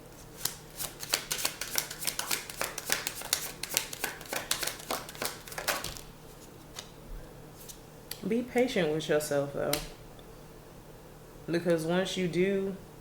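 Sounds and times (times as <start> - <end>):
cards being shuffled: 0.2 - 6.9.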